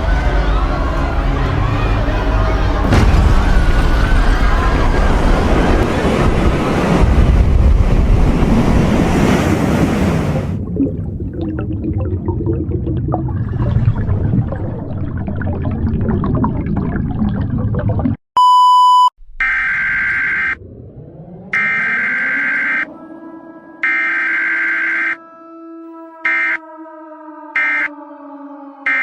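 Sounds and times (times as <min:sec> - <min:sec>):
huge wave crashing roar: 0:00.0 - 0:10.6
short steady beep: 0:18.4 - 0:20.6
harsh warbling data tone: 0:19.3 - 0:25.2, 0:27.6 - 0:27.9.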